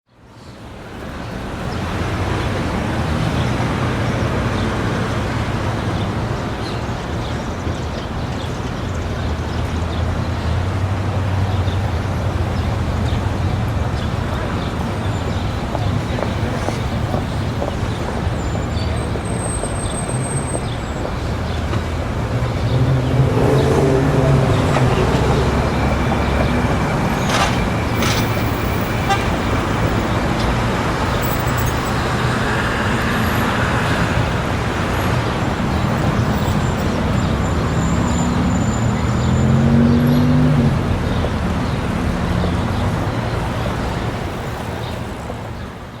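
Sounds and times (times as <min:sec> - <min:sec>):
road traffic rumble: 0:00.2 - 0:46.0
vehicles passing close: 0:00.6 - 0:46.0
car horn tooting: 0:28.9 - 0:29.8.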